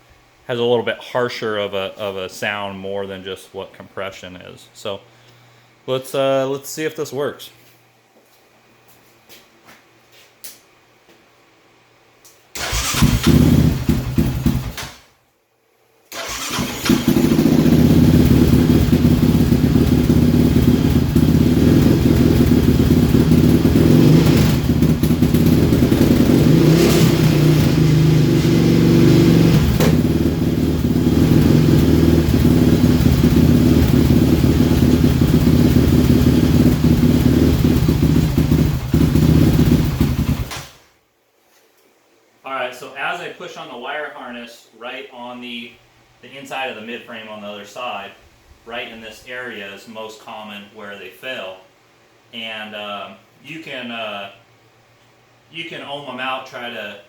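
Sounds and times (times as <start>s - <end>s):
engine starting and idling erratically: 12.6s - 15.0s, 16.1s - 40.9s.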